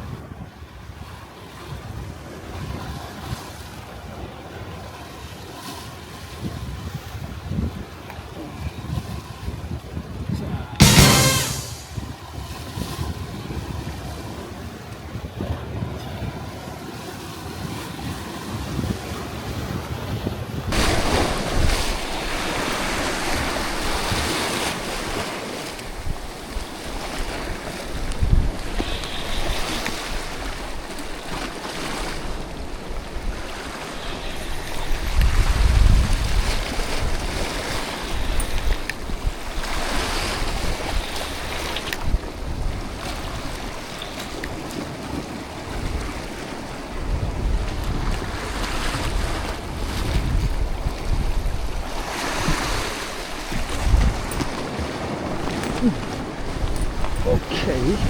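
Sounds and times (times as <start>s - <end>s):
wind rumbling on microphone: 6.0s - 10.8s, 11.8s - 58.0s
sea waves washing in: 10.8s - 12.3s, 20.6s - 58.0s.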